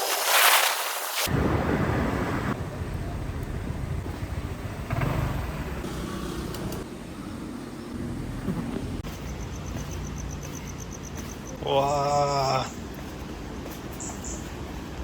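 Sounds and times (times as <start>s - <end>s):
road noise: 1.2s - 15.0s
vehicle engine running: 2.6s - 11.5s.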